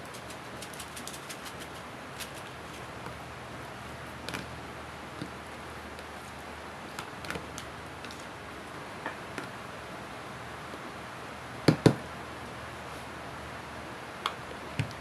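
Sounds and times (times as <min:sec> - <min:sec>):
loud knocks on counter: 0:11.7 - 0:12.0.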